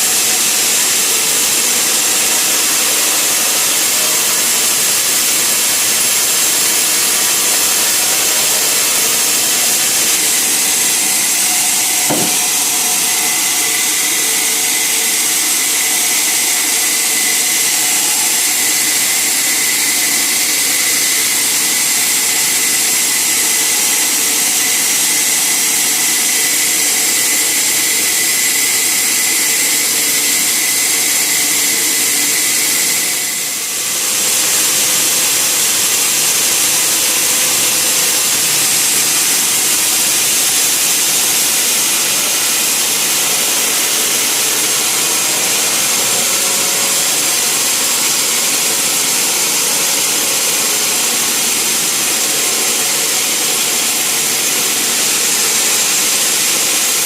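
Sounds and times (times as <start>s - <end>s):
sawmill saw cutting timber: 0.0s - 57.0s
steady high tone: 7.1s - 18.6s.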